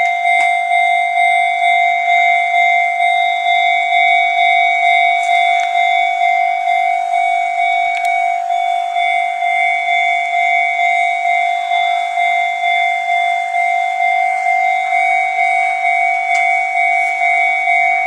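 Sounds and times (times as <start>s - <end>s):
level crossing alarm bell: 0.0s - 18.0s.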